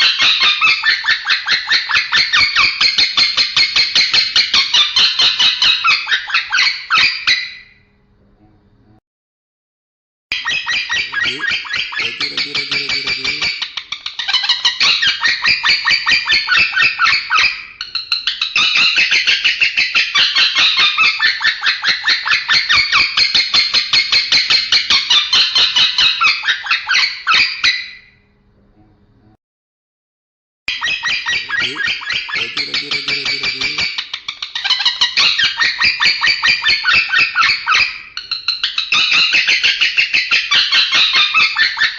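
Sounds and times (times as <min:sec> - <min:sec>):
lovebird chattering: 0:10.3 - 0:27.5, 0:30.7 - 0:41.9.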